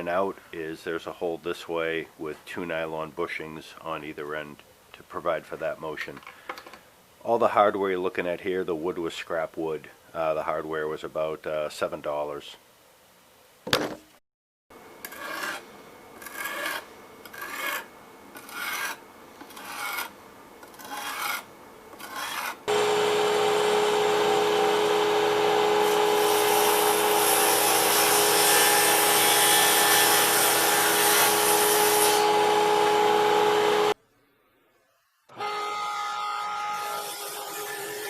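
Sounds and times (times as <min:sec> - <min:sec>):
machine humming: 0:22.7 - 0:29.4.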